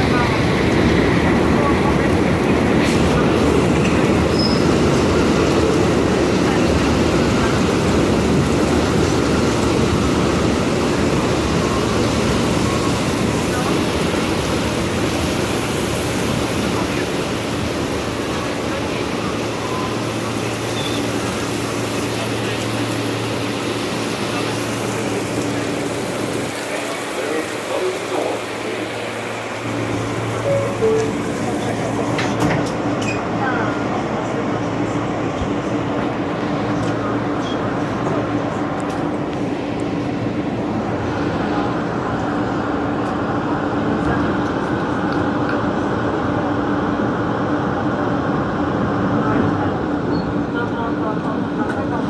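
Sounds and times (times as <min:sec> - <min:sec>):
heavy rain hissing: 0:00.0 - 0:32.1
subway train rumble: 0:00.0 - 0:52.0.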